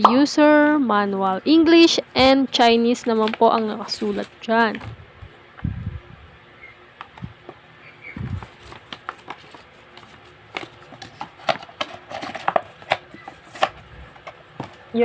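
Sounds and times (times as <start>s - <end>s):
packaging handling clicks and taps: 3.0s - 4.9s, 8.5s - 14.8s.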